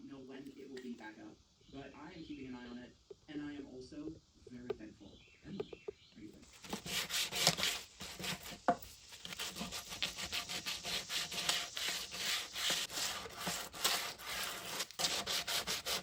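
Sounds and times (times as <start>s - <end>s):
hand sanding wood: 6.5s - 16.0s.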